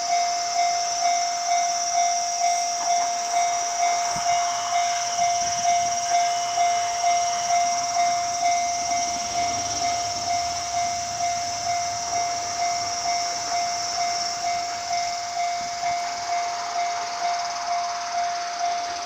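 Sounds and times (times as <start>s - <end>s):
level crossing warning bell ringing: 0.0s - 19.0s.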